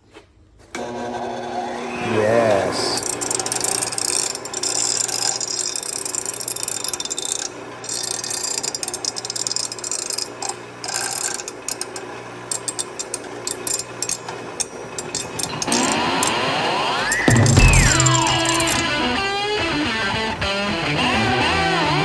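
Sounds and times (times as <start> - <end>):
metal scraping rasp: 2.9 - 19.0
metal clicks and rattles: 3.0 - 16.4, 17.0 - 18.9
rock guitar music: 16.0 - 22.0.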